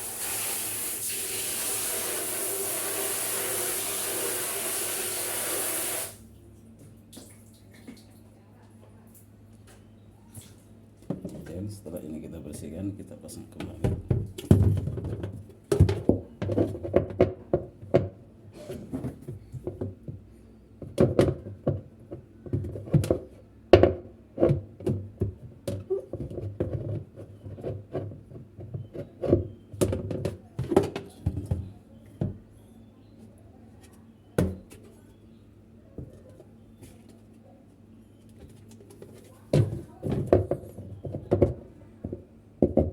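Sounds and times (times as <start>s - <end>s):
washing machine parts clattering: 38.4s - 42.9s.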